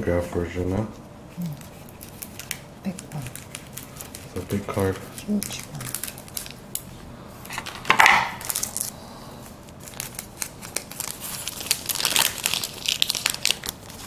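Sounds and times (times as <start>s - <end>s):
plastic wrapper crinkling and tearing: 1.4s - 6.9s, 7.5s - 9.0s, 9.6s - 14.0s.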